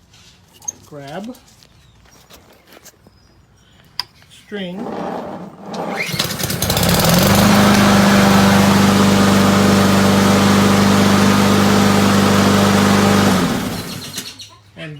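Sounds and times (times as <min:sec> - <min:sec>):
lawn tractor engine running: 0:04.9 - 0:14.4.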